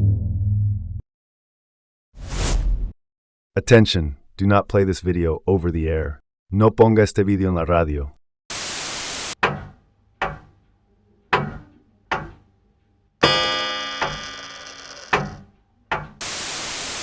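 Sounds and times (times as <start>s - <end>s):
sharp knocks: 9.4s - 10.6s, 11.3s - 12.5s, 13.2s - 16.2s
ringing chime-like chord: 13.2s - 15.1s.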